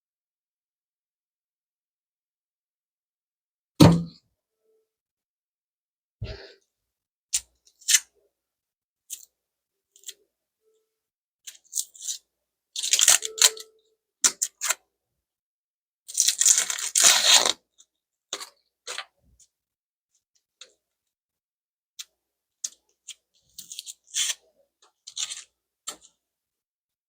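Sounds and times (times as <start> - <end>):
onion tearing and crunching: 16.1 - 17.6.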